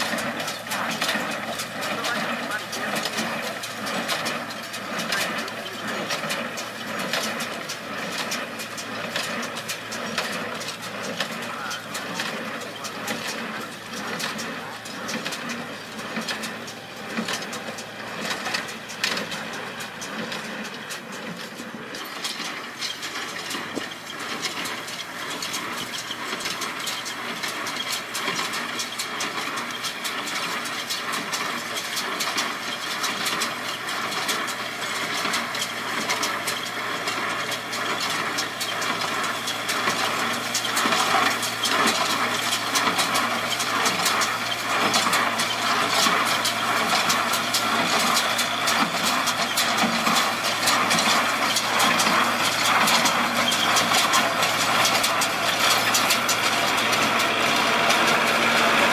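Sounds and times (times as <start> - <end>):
tractor engine clattering: 0.0 - 58.9.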